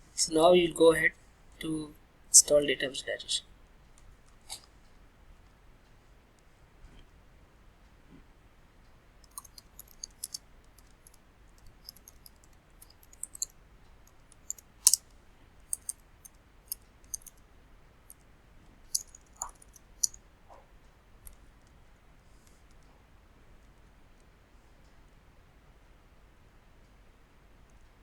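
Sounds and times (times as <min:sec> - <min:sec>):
mouse and keyboard clicks: 0:09.3 - 0:10.9, 0:11.6 - 0:13.5, 0:15.7 - 0:16.0, 0:17.1 - 0:17.3, 0:19.0 - 0:20.2.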